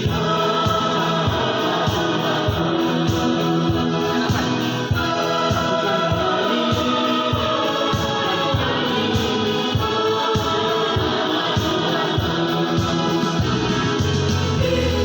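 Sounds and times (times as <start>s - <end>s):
choir singing: 0.0s - 15.0s
instrumental accompaniment: 0.0s - 15.0s.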